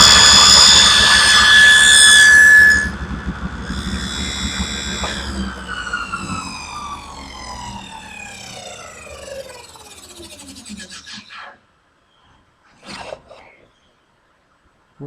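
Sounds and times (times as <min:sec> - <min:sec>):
saw blade coasting down: 0:00.0 - 0:11.6
table saw cutting wood: 0:00.0 - 0:11.6.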